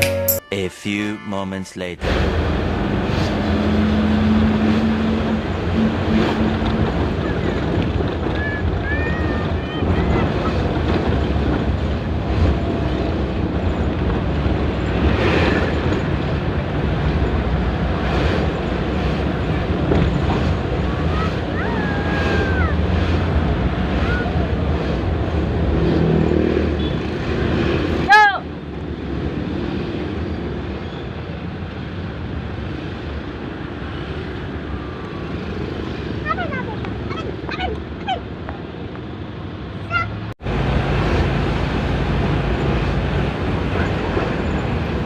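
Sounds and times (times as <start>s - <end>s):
vehicle engine and road noise: 1.8s - 45.0s
wind buffeting microphone: 5.3s - 25.8s.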